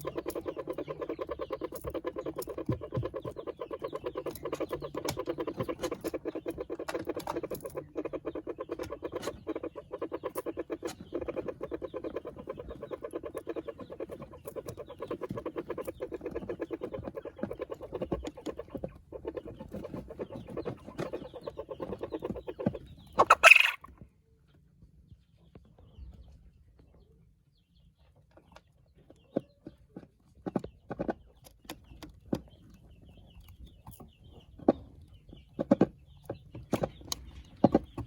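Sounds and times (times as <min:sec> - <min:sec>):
chickens clucking: 0:00.0 - 0:24.6, 0:28.1 - 0:38.0
loud chicken squawk: 0:23.2 - 0:23.9.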